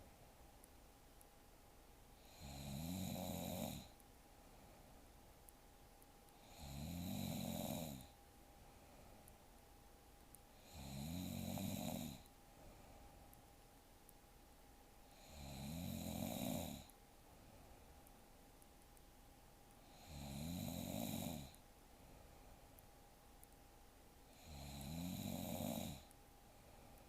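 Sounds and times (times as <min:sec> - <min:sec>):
woman snoring: 0:02.2 - 0:04.0, 0:06.4 - 0:08.2, 0:10.6 - 0:12.3, 0:15.1 - 0:16.9, 0:19.8 - 0:21.6, 0:24.3 - 0:26.1.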